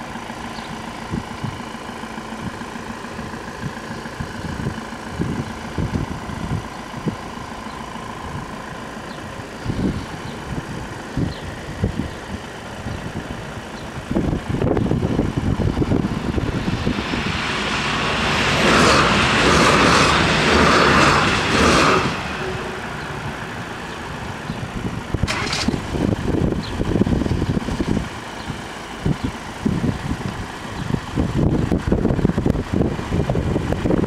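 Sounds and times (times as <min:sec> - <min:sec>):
wind buffeting microphone: 0:00.6 - 0:34.0
vehicle passing by: 0:15.6 - 0:24.8.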